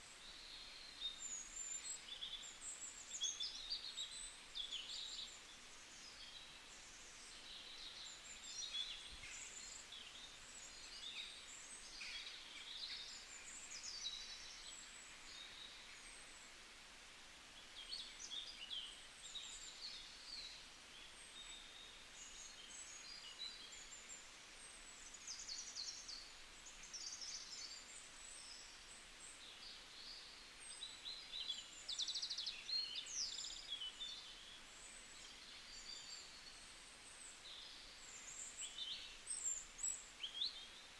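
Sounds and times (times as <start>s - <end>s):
steady background hiss: 0.0s - 40.9s.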